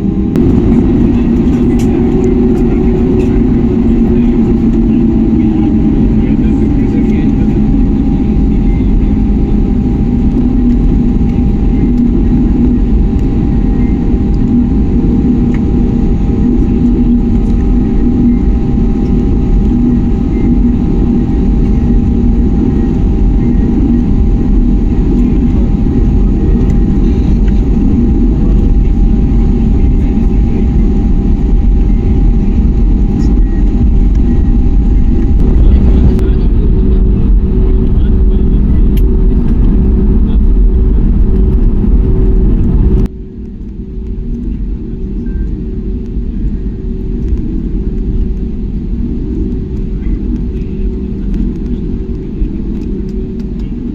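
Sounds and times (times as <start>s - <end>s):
aircraft cabin engine rumble: 0.0s - 53.9s
steady hum: 0.0s - 53.9s.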